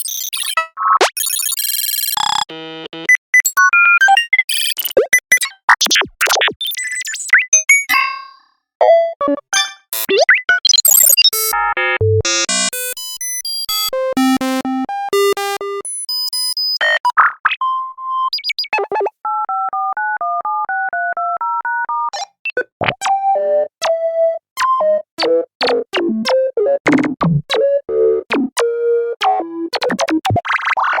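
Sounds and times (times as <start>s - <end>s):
electronic beeps: 5.9s - 8.2s, 9.6s - 11.5s.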